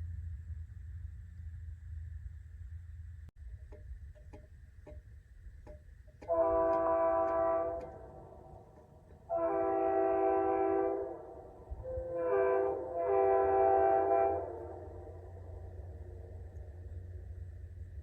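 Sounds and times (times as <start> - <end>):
train air horn chord: 6.2 - 16.4.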